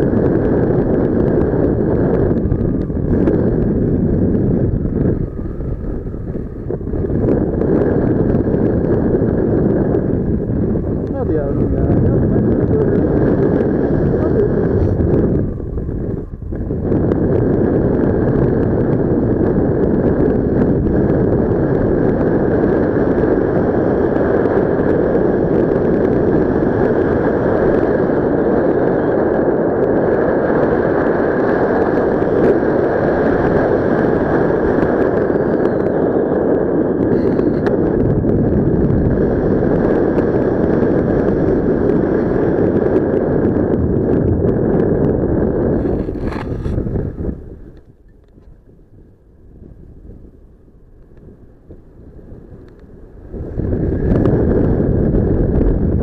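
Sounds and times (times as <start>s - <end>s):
wind buffeting microphone: 0.0s - 56.0s.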